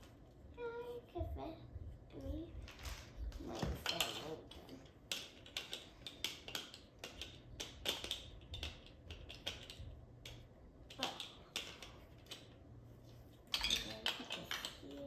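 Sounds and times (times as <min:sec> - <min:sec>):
toy blocks clicking and clacking: 0:02.6 - 0:12.6, 0:13.5 - 0:15.0.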